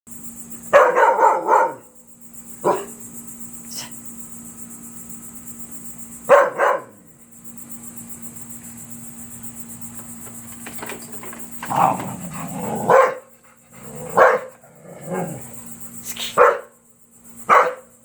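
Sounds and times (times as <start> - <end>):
dog barking: 0.7 - 2.0, 2.6 - 3.0, 6.3 - 7.0, 11.7 - 15.4, 16.3 - 16.8, 17.5 - 17.9
vacuum cleaner low hum: 4.9 - 16.5.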